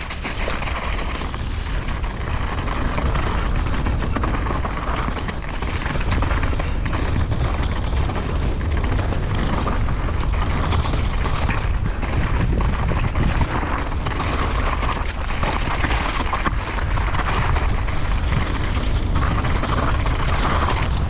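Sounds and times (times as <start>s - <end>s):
bike tyres rattling on rough ground: 0.0s - 21.0s
wind buffeting microphone: 0.0s - 21.0s.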